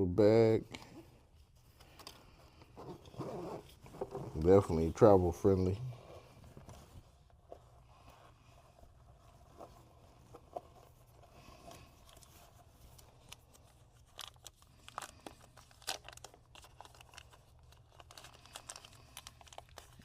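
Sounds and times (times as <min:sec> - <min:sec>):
packaging crinkling and tearing: 0:11.6 - 0:20.0.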